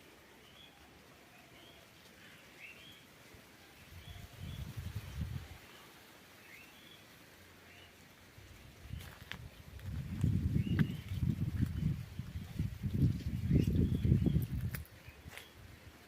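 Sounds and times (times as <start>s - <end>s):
birds chirping: 8.8s - 15.7s.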